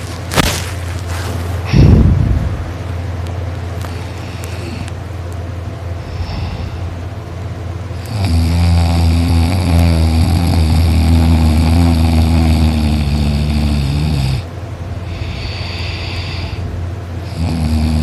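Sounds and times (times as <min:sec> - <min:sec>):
steady low hum: 0:00.0 - 0:18.0
man snoring loudly: 0:07.9 - 0:16.6, 0:17.2 - 0:18.0.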